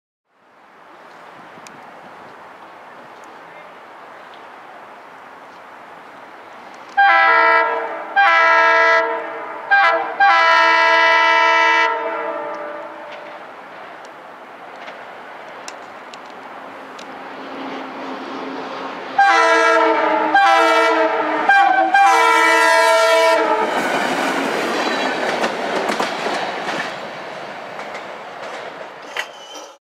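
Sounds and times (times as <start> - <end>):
rail car rumbling on rails: 0.4 - 29.8
train air horn: 6.9 - 13.4, 19.2 - 23.8.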